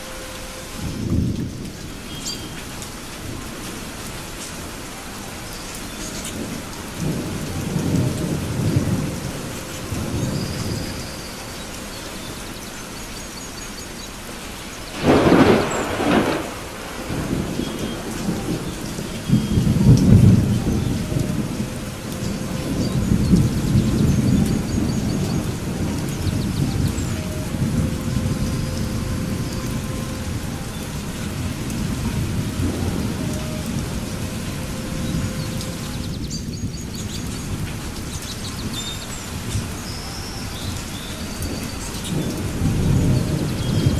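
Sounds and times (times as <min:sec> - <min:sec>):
steady rain: 0:00.0 - 0:43.9
rolling thunder: 0:06.2 - 0:12.6, 0:14.8 - 0:43.9
sharp thunderclap: 0:14.9 - 0:30.5.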